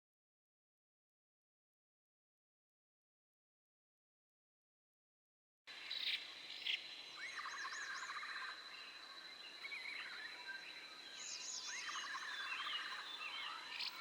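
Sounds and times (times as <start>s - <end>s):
birds chirping and trilling: 5.8s - 14.0s.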